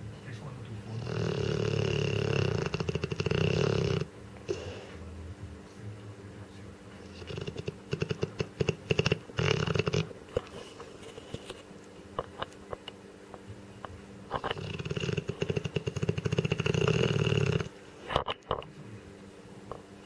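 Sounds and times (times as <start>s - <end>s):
dog snoring: 0.8s - 5.2s, 7.0s - 11.6s, 14.3s - 18.3s.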